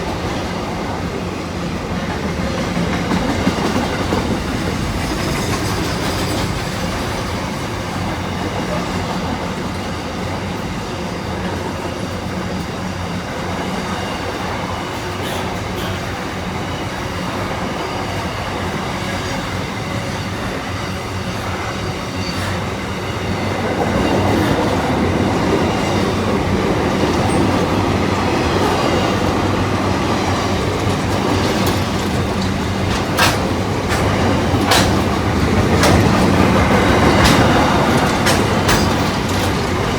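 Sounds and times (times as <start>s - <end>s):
diesel train engine drone: 0.0s - 39.9s
wheels on rails: 2.0s - 39.9s.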